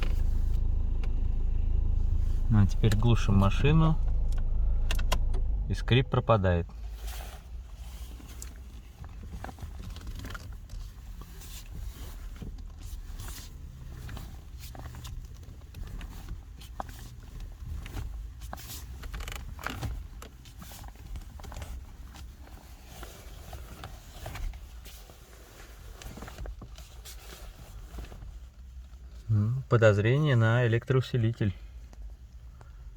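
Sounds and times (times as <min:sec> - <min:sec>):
low rumble: 0:00.0 - 0:06.3
light clicks and rustles: 0:06.6 - 0:29.3.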